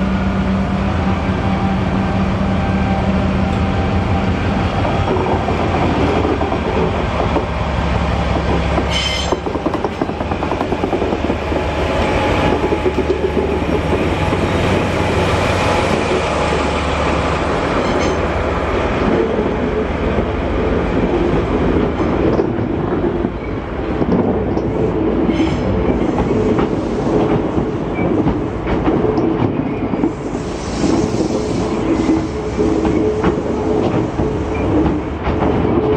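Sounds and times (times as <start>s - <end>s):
train rumbling: 0.0s - 35.9s
wheels clacking on rail joints: 4.8s - 15.2s, 30.8s - 35.9s.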